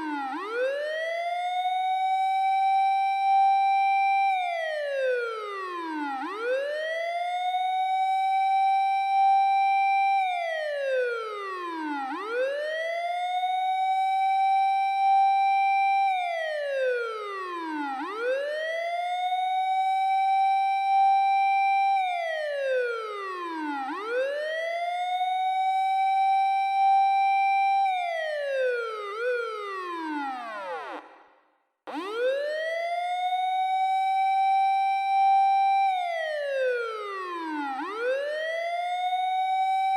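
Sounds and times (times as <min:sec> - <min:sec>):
fire engine siren wailing: 0:00.0 - 0:31.0, 0:31.9 - 0:39.9.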